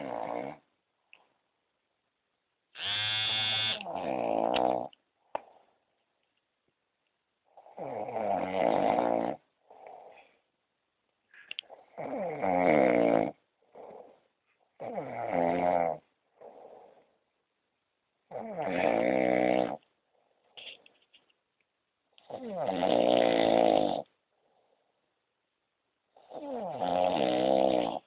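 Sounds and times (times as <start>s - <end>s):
man snoring: 0.0s - 0.6s, 2.8s - 4.9s, 7.6s - 10.1s, 11.9s - 14.0s, 18.3s - 19.8s, 22.3s - 24.1s, 26.2s - 28.0s.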